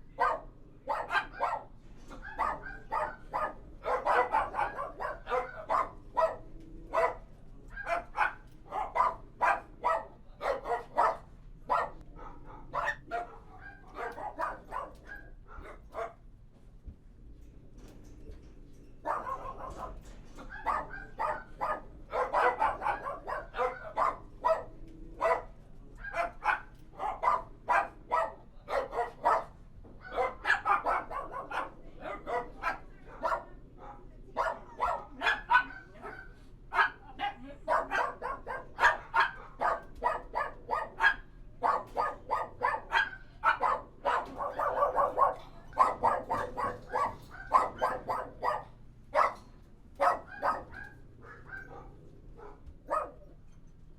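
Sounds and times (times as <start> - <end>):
dogs barking: 0.0 - 16.3, 19.0 - 53.6.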